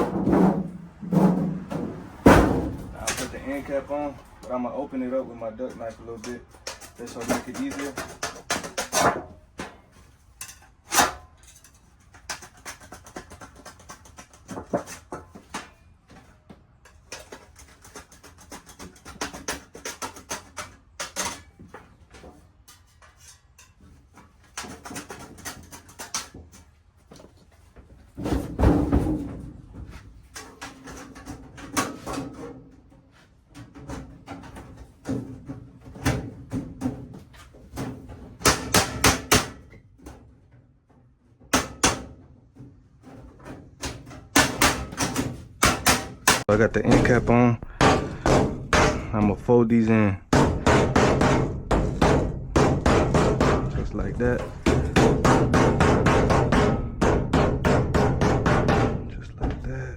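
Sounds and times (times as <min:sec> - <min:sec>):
heavier metal clatter: 0:00.0 - 0:04.7, 0:43.3 - 0:59.9
sheet metal clanks and scrapes: 0:00.0 - 0:26.8, 0:27.6 - 0:40.6, 0:41.4 - 0:49.5, 0:50.3 - 0:59.9.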